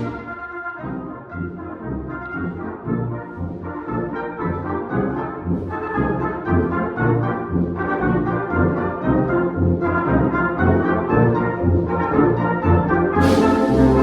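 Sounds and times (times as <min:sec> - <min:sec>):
orchestral brass music: 0:00.0 - 0:03.0, 0:13.2 - 0:14.0.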